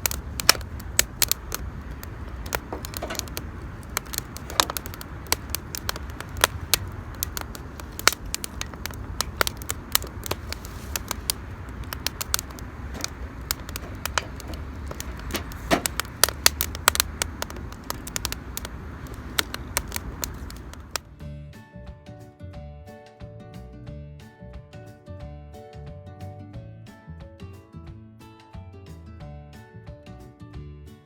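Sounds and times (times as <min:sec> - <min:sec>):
burning wood hissing squeal: 0:00.0 - 0:21.0
campfire crackling and popping: 0:00.0 - 0:21.2.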